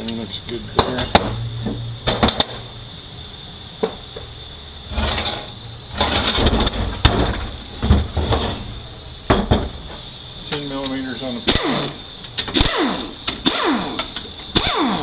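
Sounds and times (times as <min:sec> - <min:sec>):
faint hiss: 0:00.0 - 0:14.6
metal scraping: 0:04.8 - 0:08.9.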